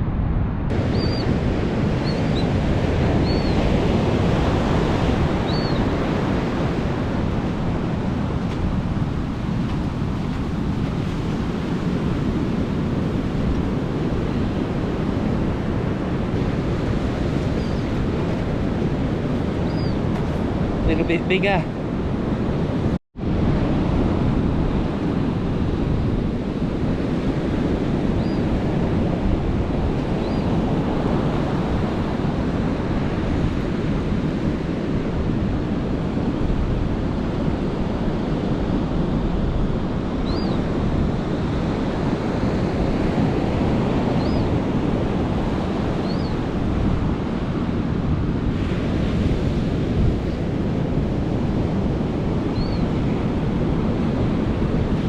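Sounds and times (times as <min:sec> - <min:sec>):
wind buffeting microphone: 0:00.0 - 0:55.0
ocean surf breaking: 0:00.7 - 0:55.0.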